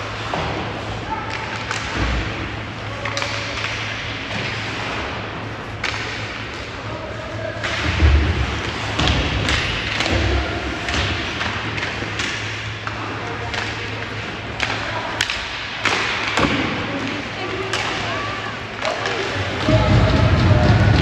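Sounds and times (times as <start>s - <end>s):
puck and players hitting boards: 0.0s - 6.8s, 7.4s - 21.0s
sticks striking puck: 5.8s - 6.6s, 7.6s - 18.0s.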